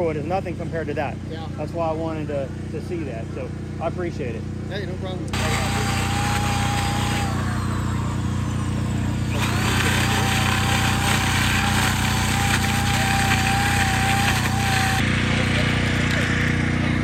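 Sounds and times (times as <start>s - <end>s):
chainsaw carving wood: 5.3s - 17.0s.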